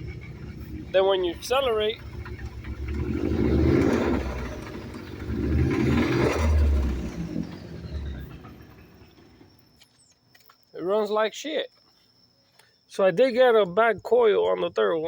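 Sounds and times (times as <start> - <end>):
car engine revving: 0.0 - 9.6.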